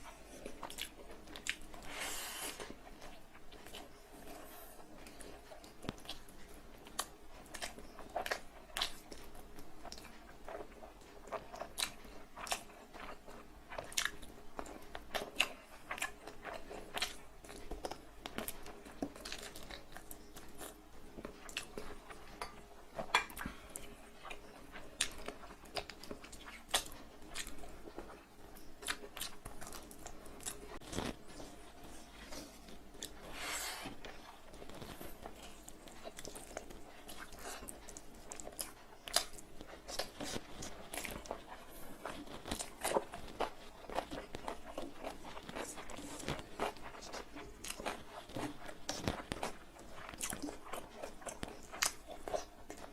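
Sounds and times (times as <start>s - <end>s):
close-miked chewing: 0.0s - 52.9s.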